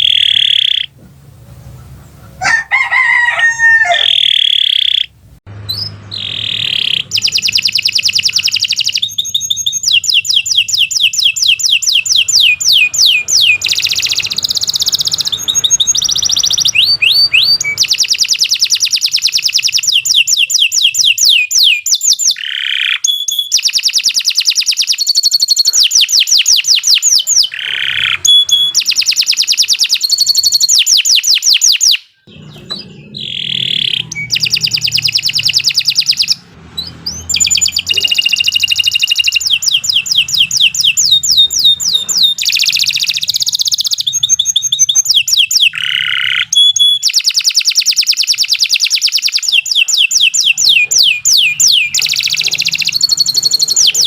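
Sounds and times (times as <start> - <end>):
low bending bird call: 0.0 - 5.1, 5.7 - 21.7, 32.1 - 47.1
canary singing trills: 0.0 - 54.0.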